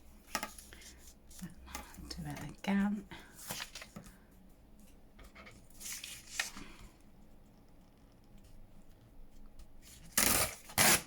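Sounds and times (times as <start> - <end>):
faint paper rustling: 0.3 - 10.1
paper tearing: 10.0 - 11.0.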